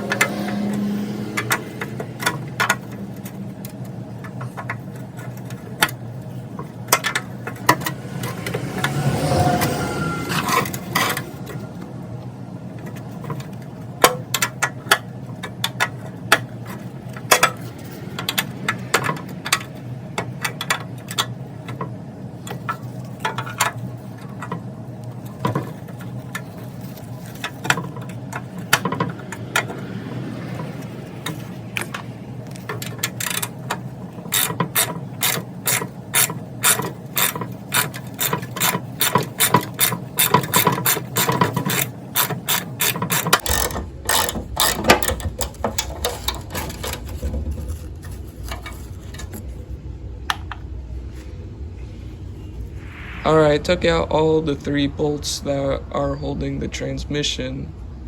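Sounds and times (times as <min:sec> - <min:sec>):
ratchet wrench clicking: 0:31.2 - 0:46.5.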